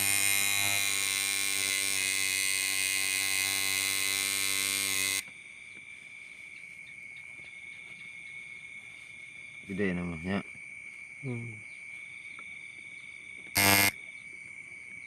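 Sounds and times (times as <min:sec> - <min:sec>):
tattoo machine buzzing: 0:00.0 - 0:05.3, 0:13.6 - 0:14.0.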